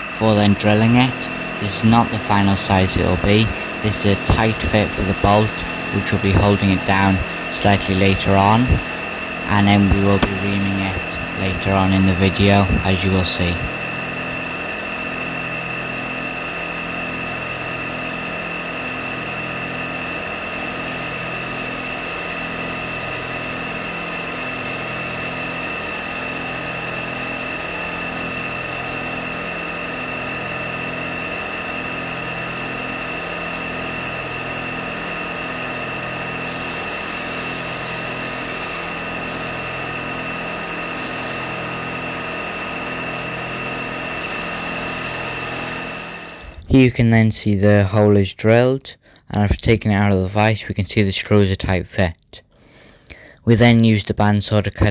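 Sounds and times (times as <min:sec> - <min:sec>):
drill spindle whining: 0:00.0 - 0:46.8.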